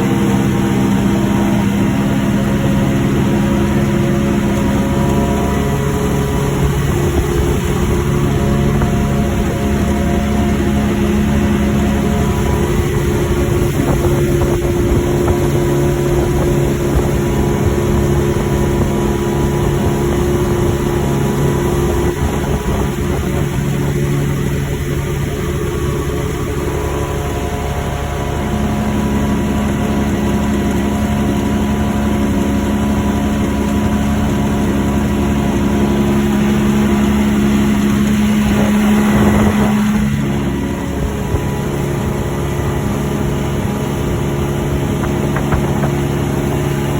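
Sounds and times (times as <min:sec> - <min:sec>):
engine running: 0:00.0 - 0:46.9.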